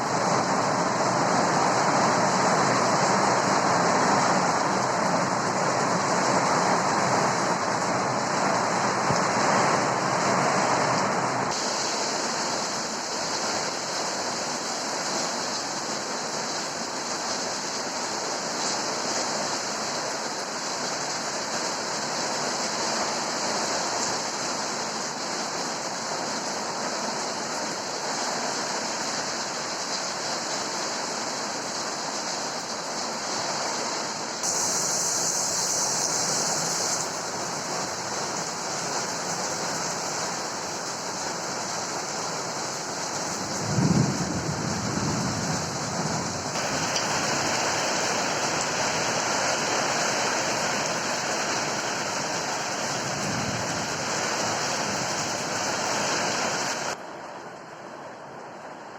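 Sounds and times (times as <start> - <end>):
heavy rain: 0.0 - 58.9
strong wind: 42.5 - 49.6, 51.7 - 57.0.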